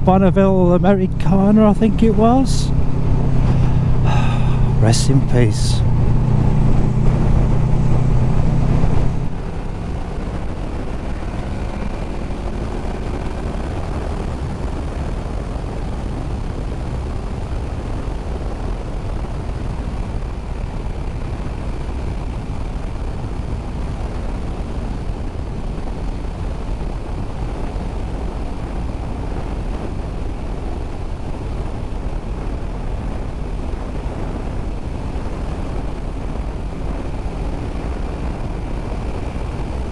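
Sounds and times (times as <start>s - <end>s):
road and wind noise: 0.0s - 39.9s
motorcycle engine under throttle: 5.8s - 14.2s.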